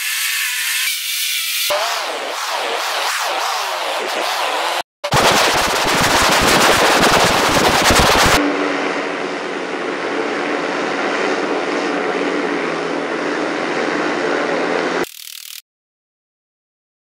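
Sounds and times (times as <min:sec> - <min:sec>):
rapid clicking stutter: 0:01.7 - 0:08.4, 0:15.0 - 0:15.6
drone propeller hum: 0:01.7 - 0:15.0.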